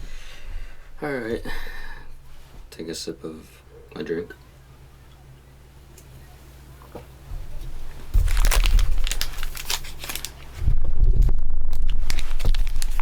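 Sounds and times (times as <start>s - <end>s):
foil wrappers crinkling: 8.0s - 13.0s.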